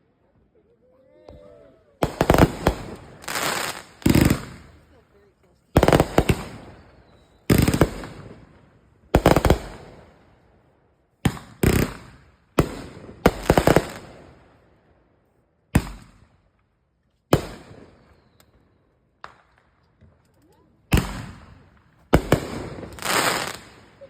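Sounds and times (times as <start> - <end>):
fireworks bangs: 1.2 - 5.0, 5.7 - 8.6, 9.2 - 10.2, 11.2 - 14.4, 20.9 - 24.0.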